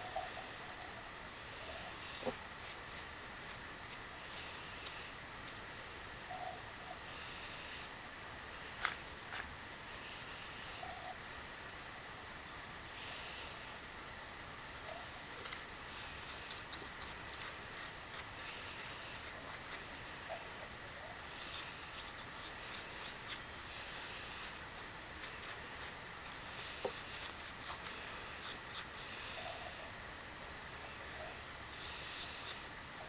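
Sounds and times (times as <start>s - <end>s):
steady hiss: 0.0s - 33.0s
scraping and rubbing: 21.4s - 29.0s, 31.7s - 32.7s.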